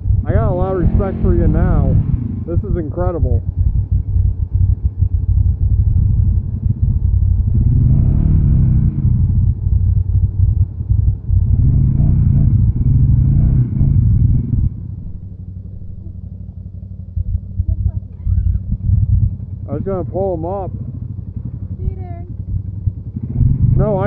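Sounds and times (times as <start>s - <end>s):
atv engine revving in mud: 0.3s - 3.0s, 6.0s - 9.5s, 11.4s - 15.0s, 23.0s - 24.0s.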